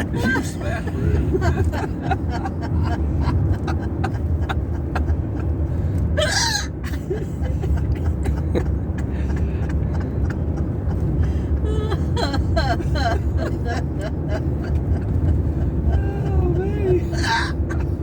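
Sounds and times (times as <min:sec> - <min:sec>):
car road noise rumble: 0:00.0 - 0:18.0.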